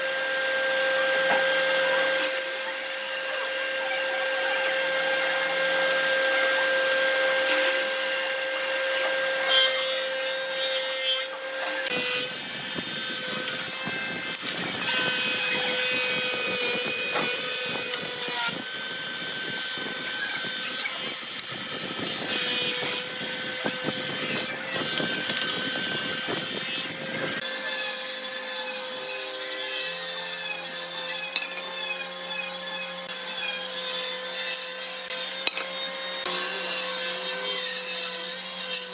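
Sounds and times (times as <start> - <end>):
power tool motor whine: 0.0 - 30.2
wood cutting noise: 0.0 - 38.9.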